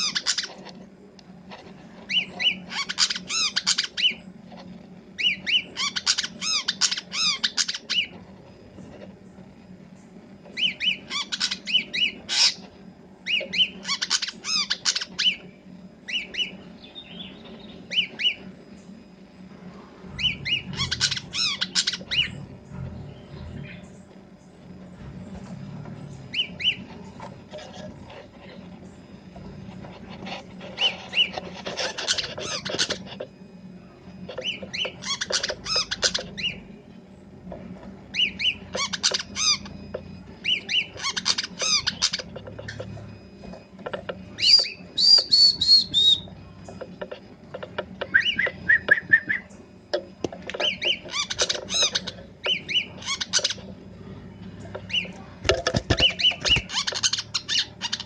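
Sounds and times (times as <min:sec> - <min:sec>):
sunbird chirping and twittering: 0:00.0 - 0:00.8, 0:01.5 - 0:19.0, 0:19.7 - 0:37.3, 0:38.0 - 0:43.1, 0:44.2 - 0:47.2, 0:48.0 - 0:49.7, 0:50.5 - 0:58.0
descending whistled bird notes: 0:20.1 - 0:22.4, 0:44.3 - 0:46.3, 0:48.1 - 0:49.5.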